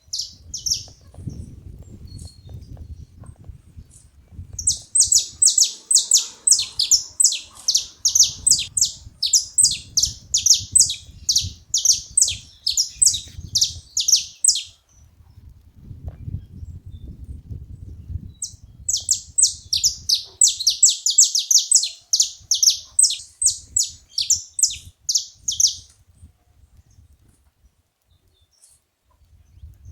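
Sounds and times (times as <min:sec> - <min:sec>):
finches calling: 0:00.0 - 0:01.0, 0:04.6 - 0:14.7, 0:18.4 - 0:25.8.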